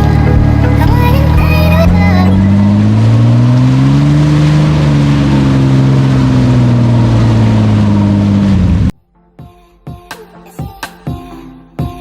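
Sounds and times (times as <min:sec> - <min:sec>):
vehicle engine driving: 0:00.0 - 0:09.0.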